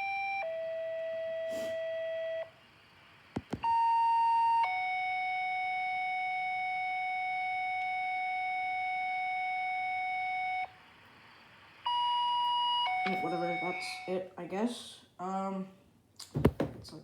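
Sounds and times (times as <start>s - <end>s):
radio clicks: 3.3s - 3.7s
two-tone pager tones: 3.5s - 10.7s, 11.9s - 14.1s.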